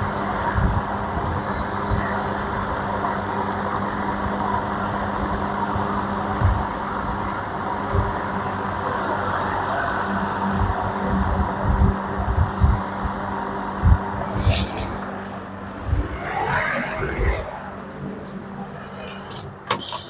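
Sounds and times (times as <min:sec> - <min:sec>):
motor hum: 0:09.8 - 0:19.4.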